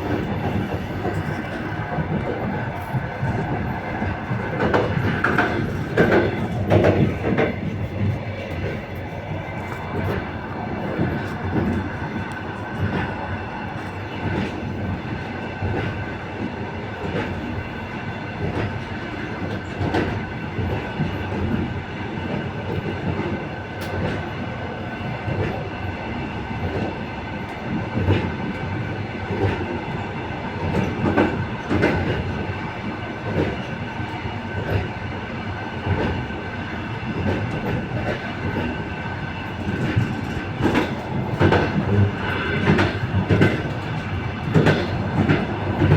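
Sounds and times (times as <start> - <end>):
train rumble: 0.0 - 45.9
wheels clacking over rail joints: 0.1 - 9.0, 39.4 - 45.9.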